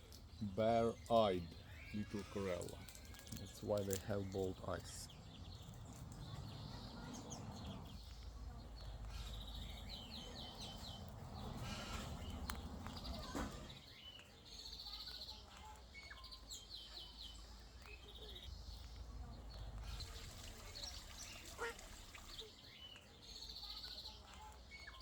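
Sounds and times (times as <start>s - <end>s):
parrots chattering: 0.2s - 25.0s
steady low rumble: 5.0s - 13.2s.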